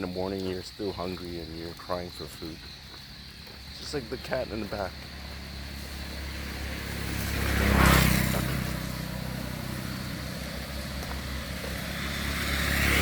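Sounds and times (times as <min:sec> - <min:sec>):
motor vehicle passing: 0:03.0 - 0:13.0
low engine hum: 0:03.9 - 0:13.0.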